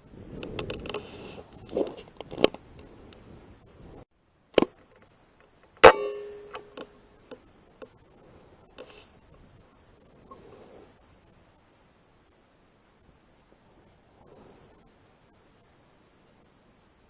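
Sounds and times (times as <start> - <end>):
rifle shots: 5.8 - 6.7
metallic ring: 5.8 - 7.0.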